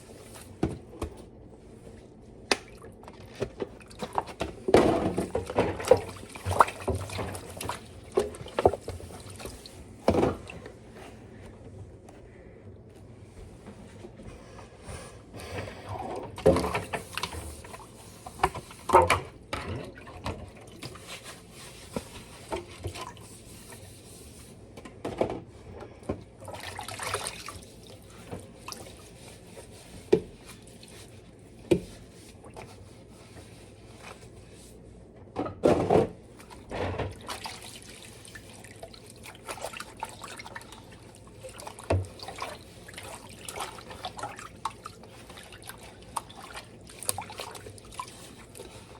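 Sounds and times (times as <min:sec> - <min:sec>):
water splashing: 0:37.1 - 0:48.8.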